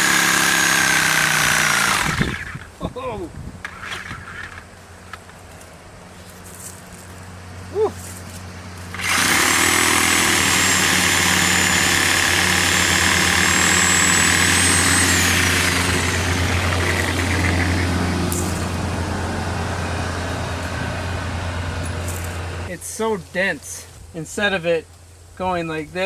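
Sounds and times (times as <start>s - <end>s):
reciprocating saw cutting root: 0.0s - 2.7s, 8.9s - 18.8s
high whine: 1.2s - 23.2s.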